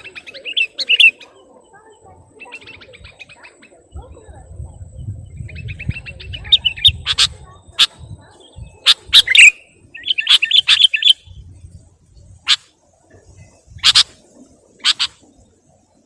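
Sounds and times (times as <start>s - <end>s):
bird chattering runs: 5.4s - 11.3s, 12.2s - 15.6s
bird sharp chips: 13.8s - 14.2s, 14.9s - 15.2s.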